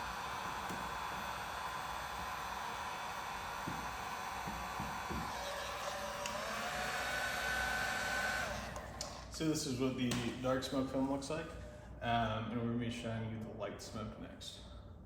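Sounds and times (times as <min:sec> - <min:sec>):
heat gun blowing: 0:00.0 - 0:09.2.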